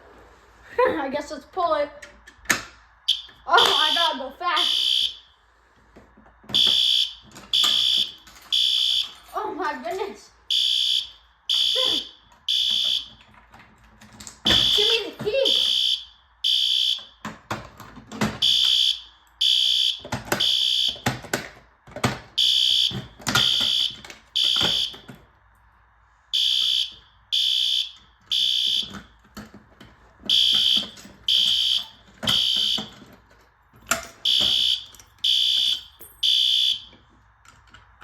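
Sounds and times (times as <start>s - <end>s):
fire alarm beeps: 3.0s - 5.4s, 6.5s - 9.2s, 10.5s - 13.3s, 14.5s - 17.2s, 18.4s - 21.2s, 22.4s - 25.2s, 26.3s - 29.2s, 30.3s - 33.1s, 34.2s - 37.0s
handling clicks and knocks: 17.0s - 18.8s, 20.0s - 25.3s, 28.0s - 38.0s.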